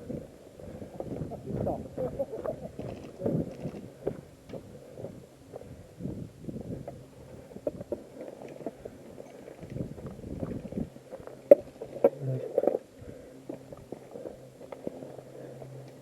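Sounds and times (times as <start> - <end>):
gear rustling against microphone: 0.0 - 12.8
small clicks: 2.8 - 3.9.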